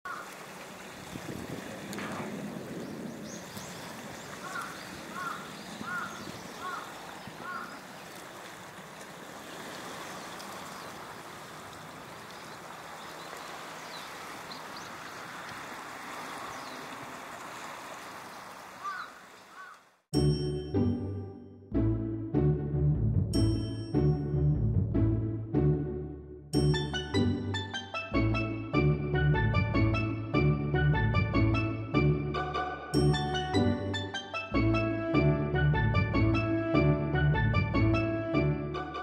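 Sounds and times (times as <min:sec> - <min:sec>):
bird calling: 0:00.1 - 0:00.4, 0:02.1 - 0:08.2, 0:18.0 - 0:19.9
outdoor background noise: 0:00.1 - 0:20.0
music: 0:20.1 - 0:39.0.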